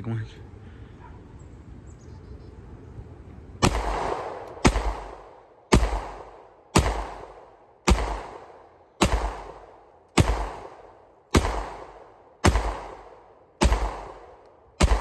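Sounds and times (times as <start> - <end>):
pistol shots with echo: 3.6 - 15.0.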